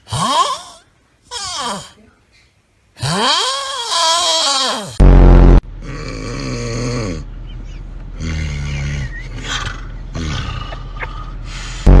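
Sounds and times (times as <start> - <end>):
person snoring loudly: 5.8 - 7.2, 10.2 - 10.8.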